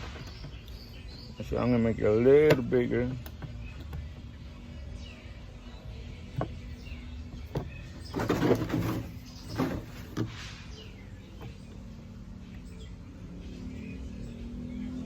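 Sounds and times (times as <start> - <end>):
plastic jug being cut: 7.4 - 10.4.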